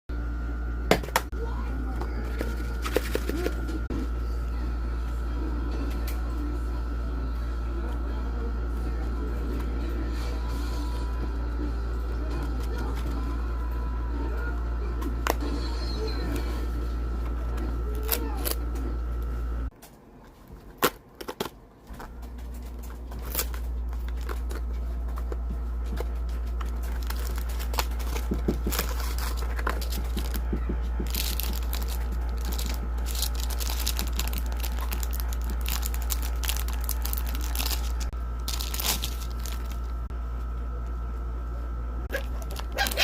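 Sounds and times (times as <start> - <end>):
low hum: 21.9 - 43.0
packaging tearing and crinkling: 22.8 - 24.6, 26.5 - 30.4, 31.0 - 40.0, 42.2 - 43.0.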